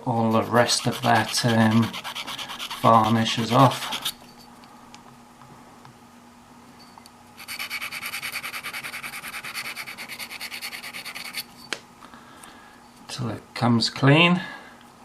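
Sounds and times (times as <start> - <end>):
metal pin scratching on abrasive: 0.3 - 4.2.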